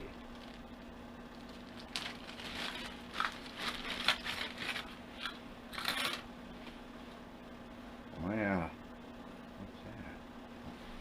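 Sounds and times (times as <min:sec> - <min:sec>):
packaging crinkling and tearing: 0:00.0 - 0:06.2
steady low hum: 0:00.0 - 0:11.0.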